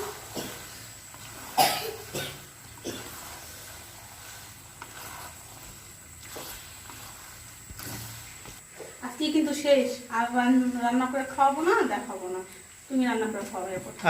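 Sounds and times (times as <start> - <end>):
person coughing: 0.3 - 0.7, 1.5 - 3.2.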